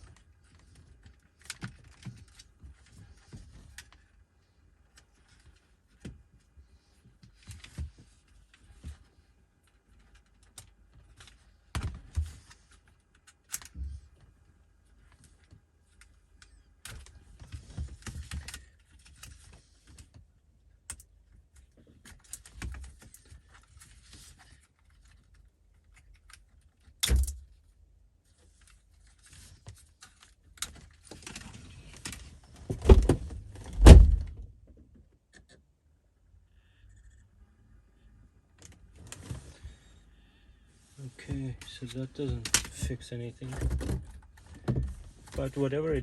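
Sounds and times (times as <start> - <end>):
loud thumps: 32.8 - 34.4.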